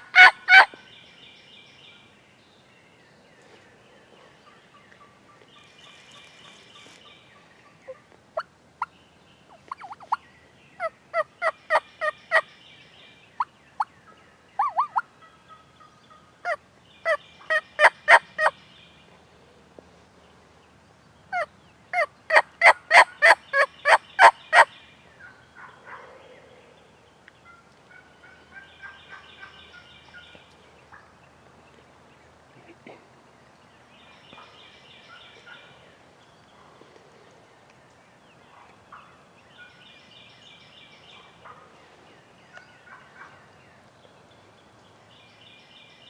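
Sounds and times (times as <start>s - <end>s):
wild turkey yelping: 0.0s - 0.8s, 9.7s - 10.2s, 14.6s - 18.5s, 21.3s - 26.2s, 27.4s - 30.2s
songbirds singing: 0.0s - 46.0s.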